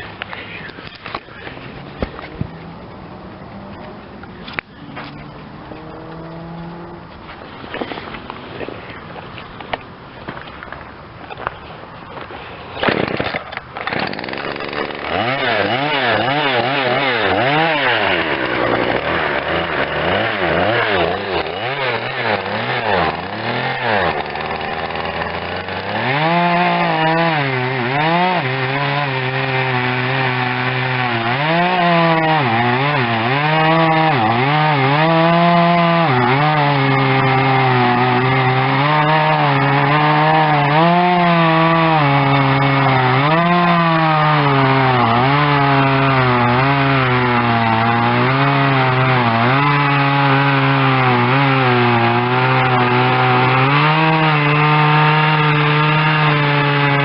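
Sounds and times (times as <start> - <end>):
chainsaw cutting wood: 0.0 - 2.7, 3.6 - 8.9, 12.2 - 57.0.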